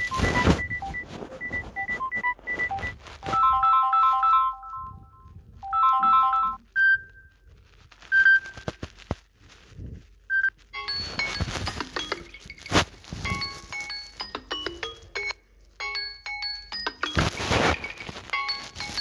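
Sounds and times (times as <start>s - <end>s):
busy ringtone melody: 0.0s - 7.3s, 10.7s - 19.0s
short beeps and clicks: 0.0s - 7.3s.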